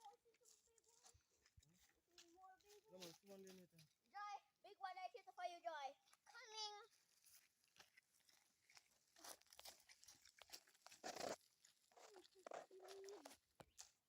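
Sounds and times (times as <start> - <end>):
plants rustling and crunching: 7.1 - 14.0.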